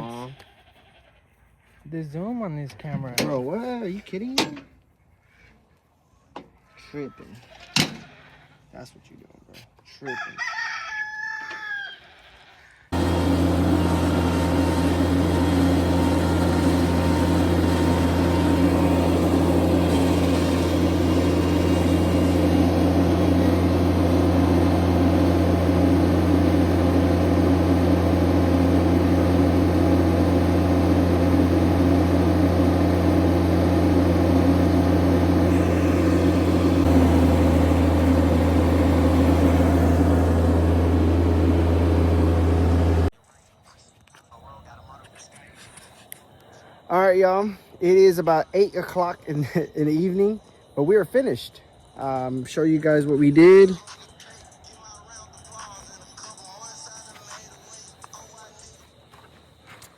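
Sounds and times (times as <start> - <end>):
skid steer engine running: 12.9 - 43.1.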